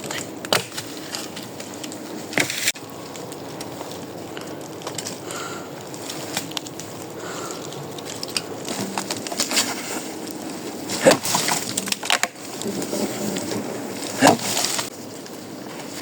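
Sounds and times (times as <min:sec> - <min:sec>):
wood cracking and splintering: 0:00.0 - 0:16.0.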